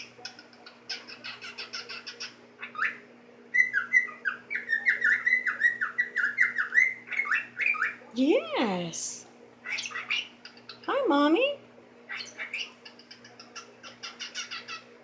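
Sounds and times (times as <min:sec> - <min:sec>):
cockatiel chirping: 0:00.3 - 0:08.0, 0:09.6 - 0:10.9, 0:12.1 - 0:14.9.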